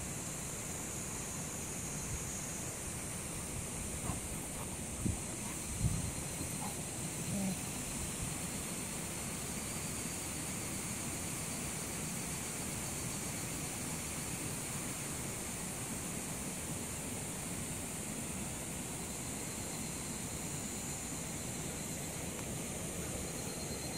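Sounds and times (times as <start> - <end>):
cicadas shrilling: 0.0 - 23.9
wind rumble on microphone: 3.8 - 6.7.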